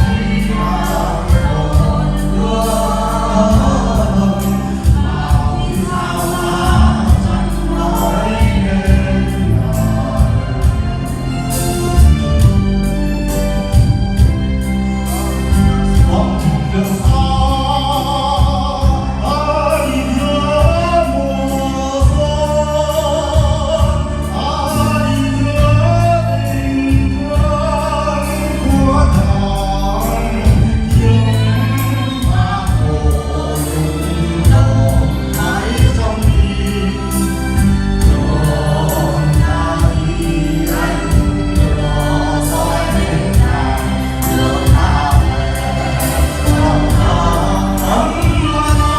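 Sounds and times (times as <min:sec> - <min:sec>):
group of people singing: 0:00.0 - 0:48.9
backing track with bass and beat: 0:23.3 - 0:48.9.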